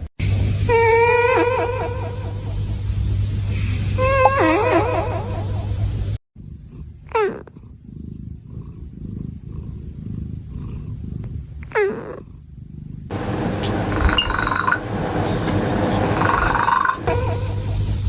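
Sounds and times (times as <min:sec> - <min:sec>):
cat snoring: 0:06.4 - 0:17.2
squeaks falling in pitch: 0:13.9 - 0:14.8.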